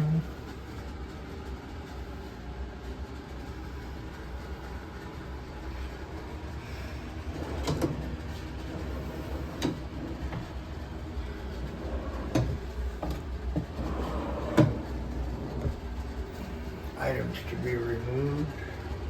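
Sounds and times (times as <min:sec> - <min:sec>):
steady low rumble: 0:00.0 - 0:19.0
doors being handled: 0:11.6 - 0:16.0.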